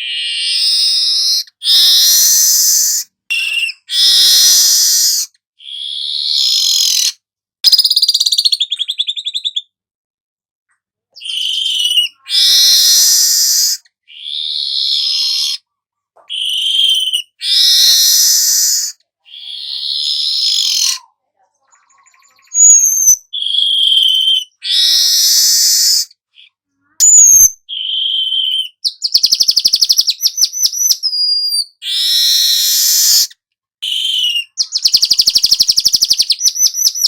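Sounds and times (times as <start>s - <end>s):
bird buzzy hissing song: 0.6s - 7.1s, 11.3s - 15.6s, 16.6s - 19.0s, 19.6s - 21.0s, 23.9s - 26.1s, 31.7s - 33.3s, 33.9s - 37.0s.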